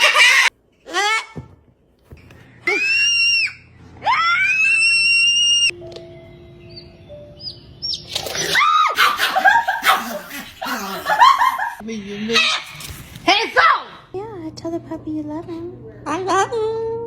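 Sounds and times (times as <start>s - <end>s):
animal screeching calls: 8.2s - 10.7s, 12.2s - 14.0s.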